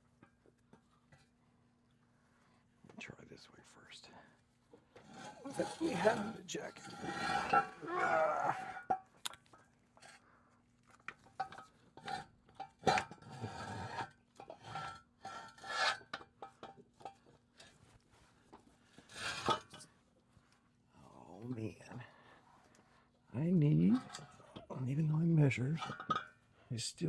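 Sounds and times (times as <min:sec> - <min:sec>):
metal jack stand scraping and clanking: 0:05.0 - 0:07.9, 0:11.4 - 0:17.2, 0:19.0 - 0:19.9, 0:23.8 - 0:24.7, 0:25.8 - 0:26.4.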